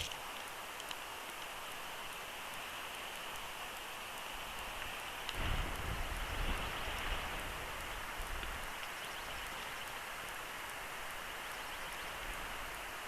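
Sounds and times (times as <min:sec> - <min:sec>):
faint ticks: 0:00.0 - 0:05.9, 0:07.8 - 0:10.8
hiss of wind-driven precipitation: 0:00.0 - 0:13.0
low wind rumble: 0:04.6 - 0:09.8.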